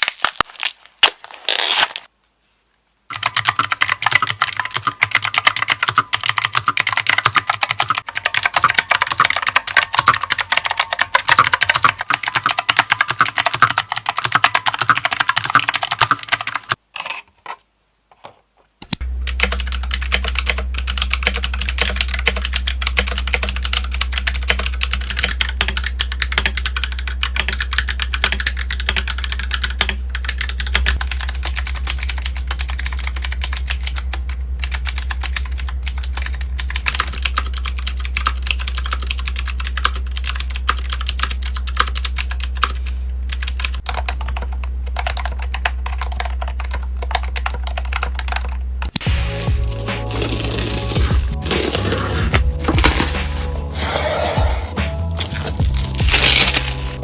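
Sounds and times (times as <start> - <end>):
rapid typing on keyboard: 3.1 - 16.8, 19.2 - 54.6, 55.2 - 57.0
steady low hum: 18.9 - 57.0.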